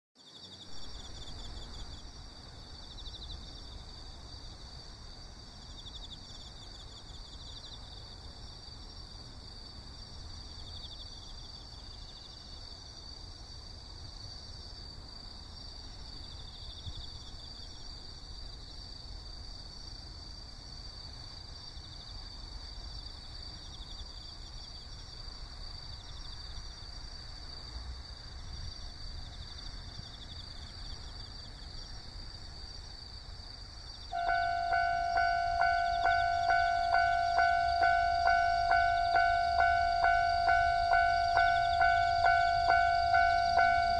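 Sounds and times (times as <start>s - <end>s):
insects droning: 0.2s - 43.9s
low outdoor rumble: 27.4s - 43.9s
insect pulsing trills: 34.2s - 43.9s.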